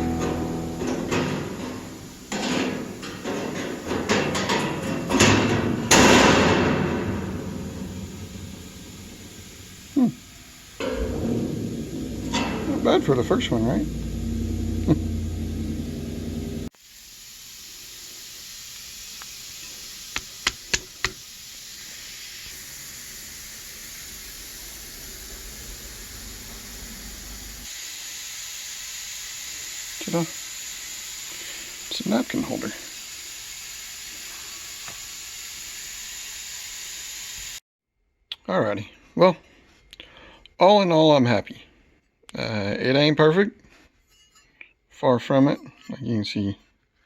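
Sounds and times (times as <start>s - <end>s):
steel pieces knocking and clanking: 0.0s - 9.9s, 10.8s - 16.6s
steady hiss: 0.0s - 37.6s
sharp knocks: 10.8s - 16.7s.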